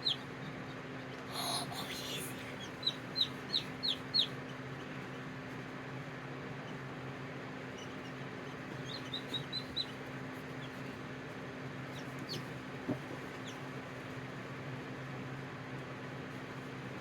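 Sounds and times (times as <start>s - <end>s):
low machine hum: 0.0s - 17.0s
chicks peeping: 1.4s - 5.1s, 7.7s - 10.9s, 11.9s - 13.6s.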